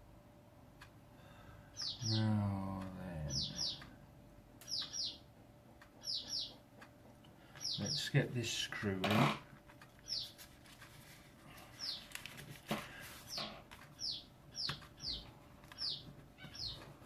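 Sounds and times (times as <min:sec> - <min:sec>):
small bird chirping: 0:01.7 - 0:04.0, 0:04.6 - 0:08.2, 0:10.0 - 0:10.4, 0:11.6 - 0:12.1, 0:13.2 - 0:17.0.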